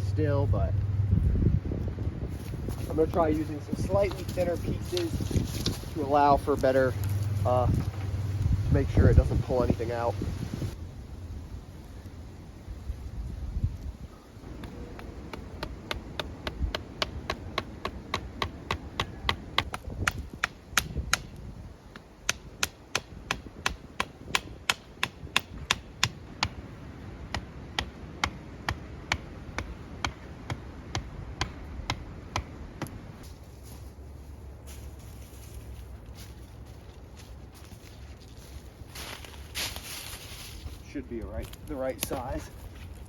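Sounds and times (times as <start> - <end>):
tool tapping on wood: 14.5 - 21.3.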